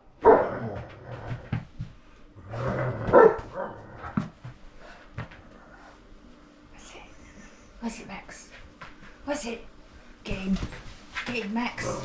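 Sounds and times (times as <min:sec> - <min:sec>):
dog barking: 0:00.2 - 0:00.5, 0:03.1 - 0:03.8.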